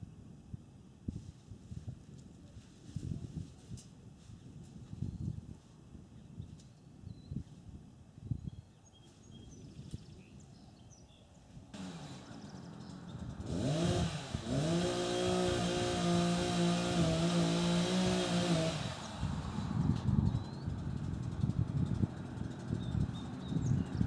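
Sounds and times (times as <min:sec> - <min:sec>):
chainsaw engine revving: 0:11.8 - 0:21.1.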